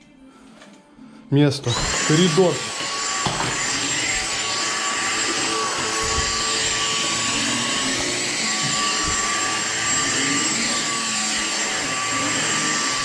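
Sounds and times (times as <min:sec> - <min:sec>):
vacuum cleaner running: 0:01.6 - 0:13.0.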